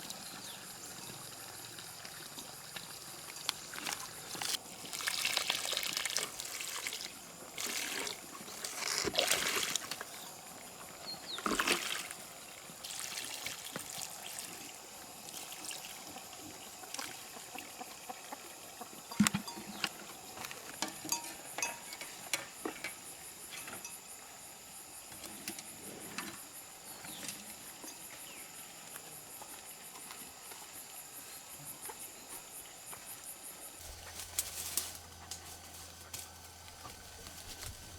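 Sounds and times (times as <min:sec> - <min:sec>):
insects chirring: 0:00.1 - 0:37.9
light clicks and clinks: 0:20.8 - 0:24.0
low steady hum: 0:33.8 - 0:37.9.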